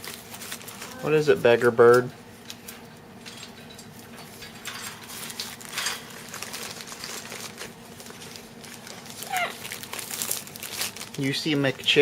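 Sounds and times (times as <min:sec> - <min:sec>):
paper packaging crinkling: 0:00.0 - 0:01.1, 0:05.1 - 0:12.0.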